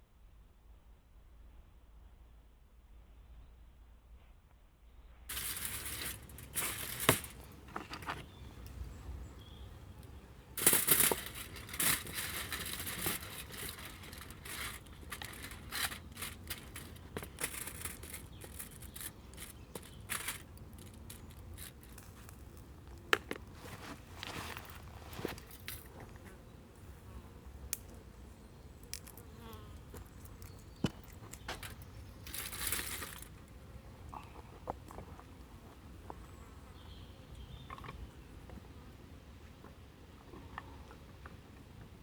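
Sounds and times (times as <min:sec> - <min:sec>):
rustling and crackling: 0:05.3 - 0:36.2.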